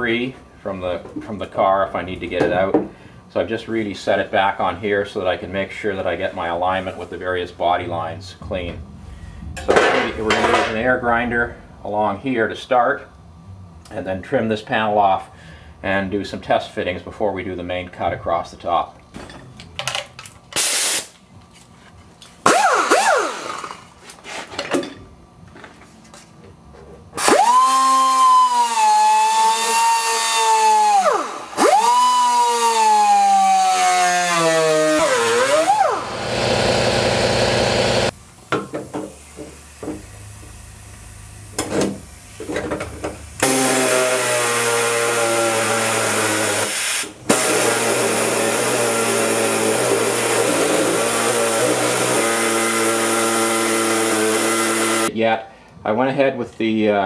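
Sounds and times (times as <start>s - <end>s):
air grinder cutting sheet steel: 27.2s - 38.2s, 43.4s - 55.1s.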